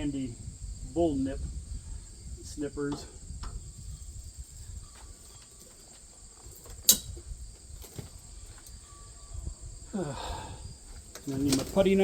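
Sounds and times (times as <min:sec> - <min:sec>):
snippers snapping through metal: 0:06.8 - 0:07.2.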